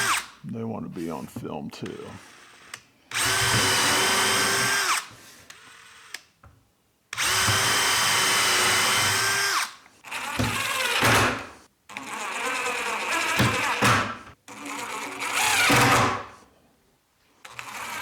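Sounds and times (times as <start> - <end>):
power drill driving screws: 2.2 - 6.3, 7.2 - 11.4, 15.0 - 16.1.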